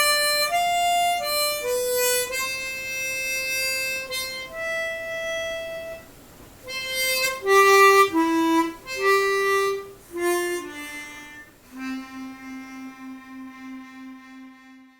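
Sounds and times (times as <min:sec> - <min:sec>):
slow reed instrument melody: 0:06.7 - 0:14.9.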